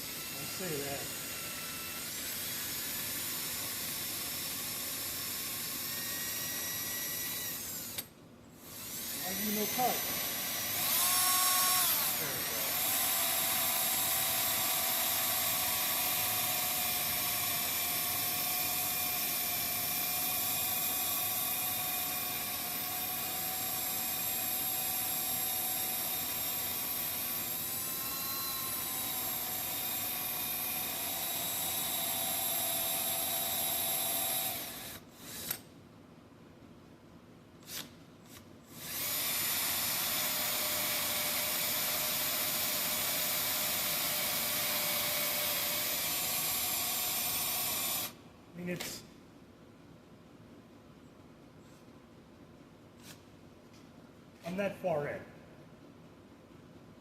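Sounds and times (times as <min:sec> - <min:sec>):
electric drill boring into metal: 0:00.0 - 0:35.6, 0:38.8 - 0:48.2.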